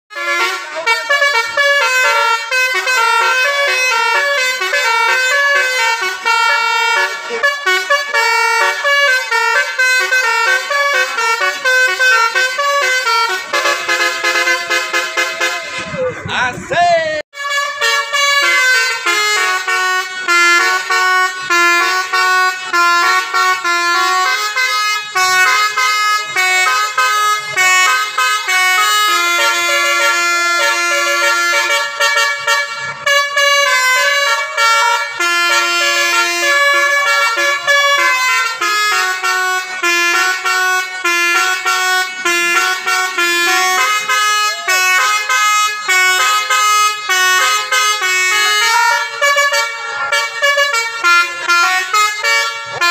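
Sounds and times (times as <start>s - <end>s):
musical air horn fast tune: 0.1s - 52.9s.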